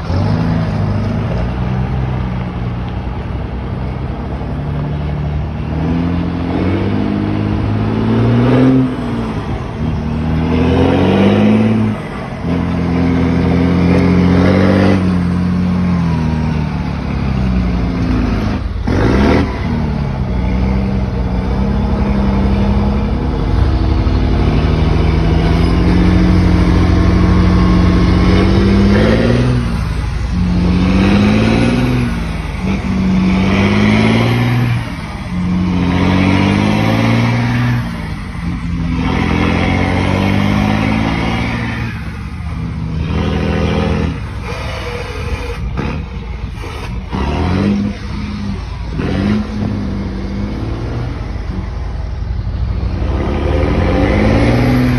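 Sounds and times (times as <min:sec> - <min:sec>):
truck diesel engine revving: 0:00.0 - 0:54.9.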